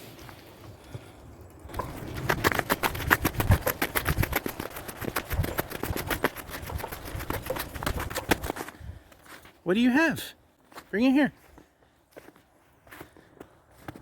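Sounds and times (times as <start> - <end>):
quick footsteps: 1.7 - 9.6.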